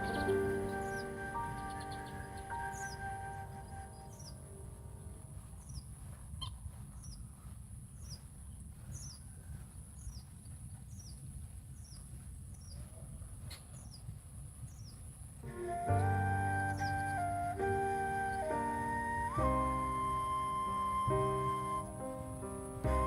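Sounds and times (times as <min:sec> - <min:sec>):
background music: 0:00.0 - 0:05.1, 0:15.5 - 0:23.0
bird chirping: 0:00.0 - 0:23.0.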